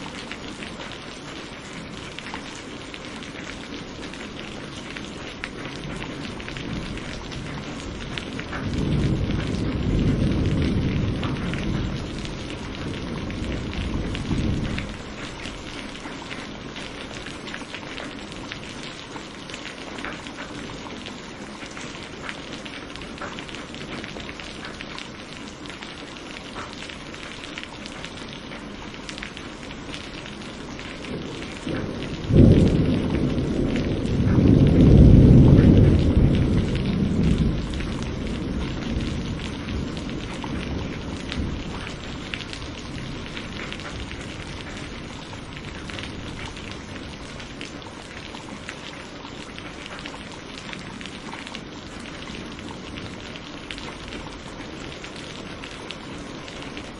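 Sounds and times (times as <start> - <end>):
steady rain falling: 0.0 - 56.9
thunder clap and rolling rumble: 5.8 - 16.0, 30.8 - 47.8.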